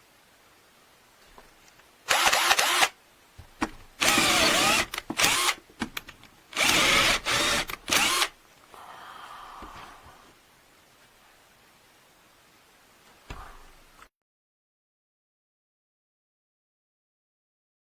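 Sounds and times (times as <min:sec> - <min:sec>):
hammer drill motor bursts: 0:02.1 - 0:02.9, 0:04.0 - 0:05.6, 0:06.6 - 0:08.4.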